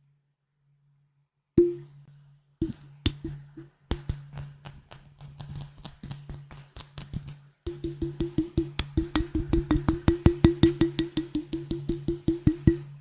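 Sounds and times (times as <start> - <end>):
tapping on glass bottle: 7.7 - 12.9.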